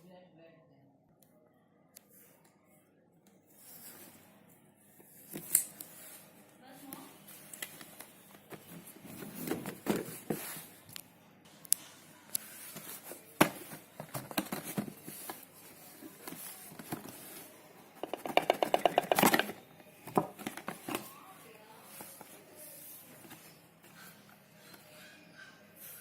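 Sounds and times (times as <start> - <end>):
packaging clicks and rustles: 12.7 - 21.1.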